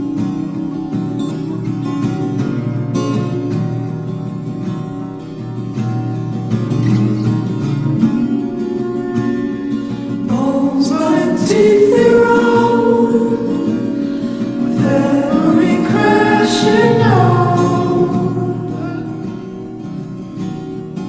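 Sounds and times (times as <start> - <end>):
guitar accompaniment: 0.0 - 21.0
person singing long held notes: 10.3 - 19.6.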